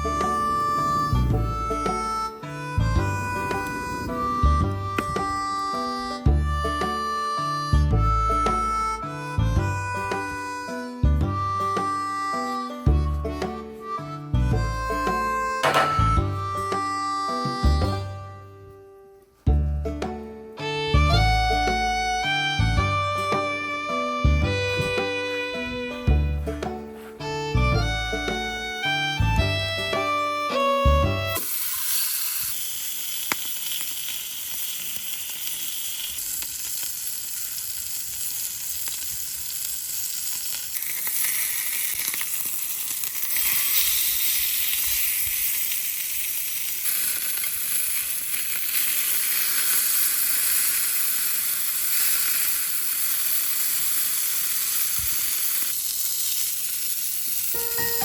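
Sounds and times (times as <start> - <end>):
food sizzling in a pan: 31.4 - 58.0.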